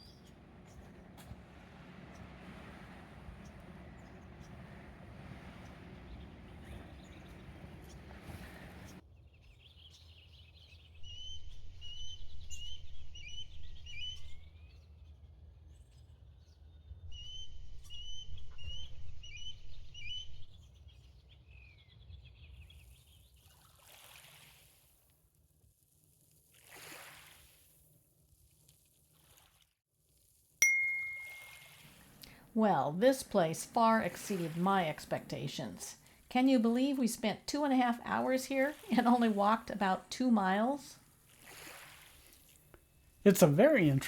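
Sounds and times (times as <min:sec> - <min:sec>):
low rumble: 0:00.0 - 0:09.0.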